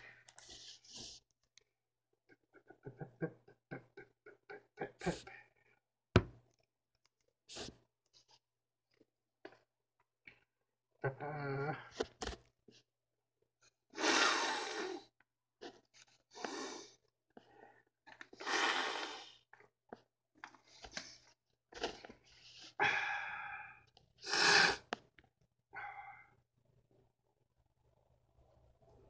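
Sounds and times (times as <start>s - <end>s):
man sniffing and breathing heavily: 13.9s - 19.5s, 20.6s - 25.0s.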